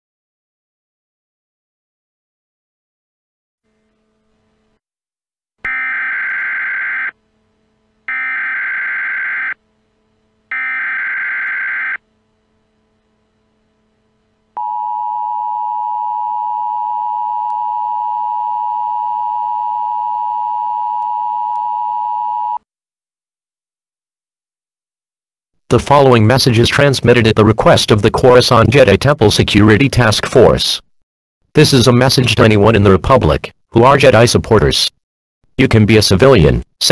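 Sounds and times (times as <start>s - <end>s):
buzzing digital data bursts: 5.7s - 7.2s, 8.1s - 9.6s, 10.5s - 12.0s.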